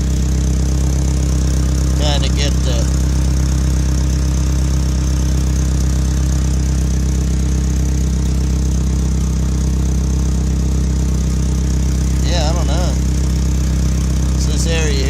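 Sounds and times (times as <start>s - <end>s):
engine idling with pulsing exhaust: 0.0s - 15.0s.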